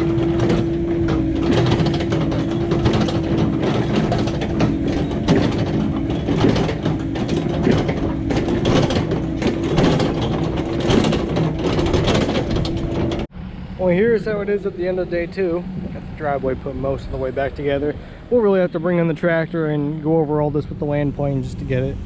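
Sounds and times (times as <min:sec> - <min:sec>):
metallic clanking and rattling: 0:00.0 - 0:13.3
heavy machinery running: 0:00.0 - 0:22.0.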